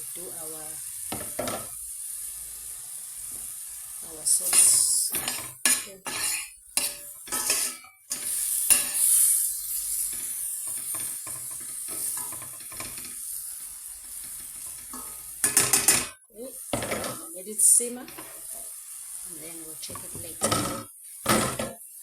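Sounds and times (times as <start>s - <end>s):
bacon sizzling in a frying pan: 0.0s - 22.0s
utensil scraping a pan: 4.4s - 16.1s.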